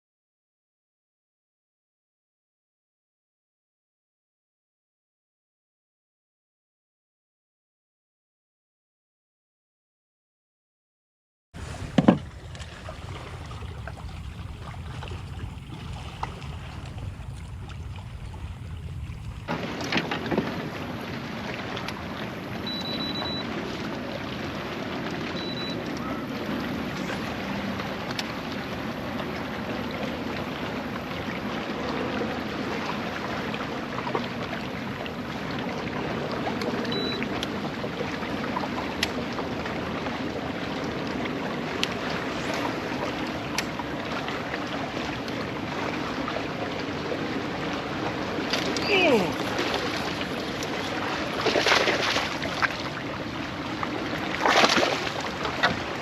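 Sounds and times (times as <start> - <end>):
water noise: 11.6 - 56.0
wind: 11.6 - 56.0
sharp knocks: 11.9 - 12.3
high-pitched beep: 25.4 - 25.8.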